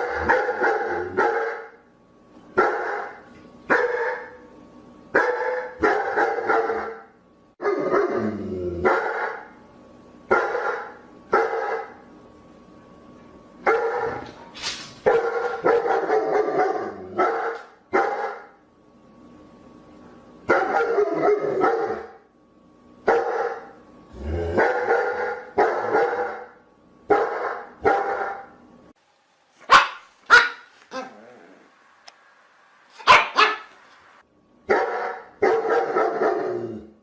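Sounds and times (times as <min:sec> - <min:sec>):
dog barking: 0:00.0 - 0:01.8, 0:02.6 - 0:04.4, 0:05.2 - 0:08.1, 0:08.8 - 0:09.5, 0:10.3 - 0:12.0, 0:13.6 - 0:14.4, 0:15.0 - 0:18.6, 0:20.5 - 0:22.2, 0:23.1 - 0:23.8, 0:24.6 - 0:28.5, 0:29.7 - 0:31.1, 0:33.0 - 0:33.8, 0:34.7 - 0:36.6.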